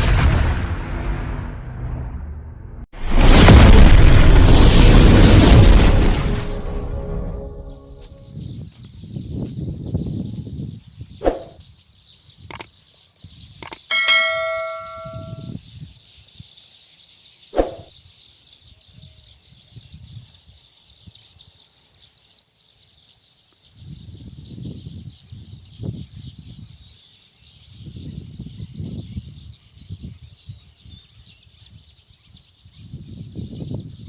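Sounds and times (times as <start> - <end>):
low rumbling noise: 0.0 - 8.3.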